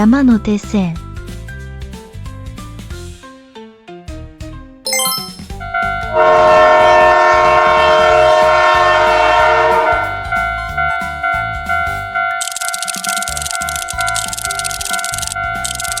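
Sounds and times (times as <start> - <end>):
sparkling chime glissando: 4.9 - 5.6
train horn blast: 6.1 - 11.0.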